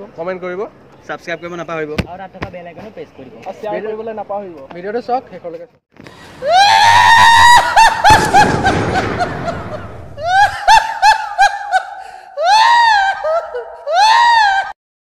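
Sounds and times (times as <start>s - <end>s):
high-pitched comic laughing: 6.4s - 14.8s.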